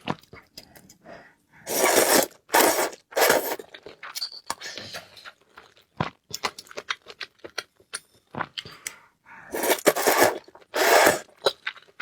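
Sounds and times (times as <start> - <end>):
noisy chewing bursts: 9.5 - 11.6.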